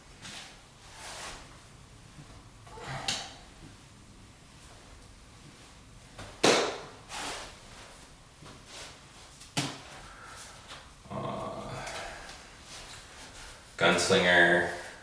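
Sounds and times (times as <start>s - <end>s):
poi smacking into hand: 6.2s - 7.0s, 9.5s - 9.9s.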